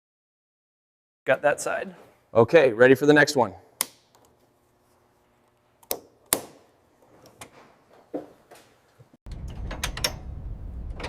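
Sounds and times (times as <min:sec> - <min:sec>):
low mechanical rumble: 0:09.3 - 0:11.0.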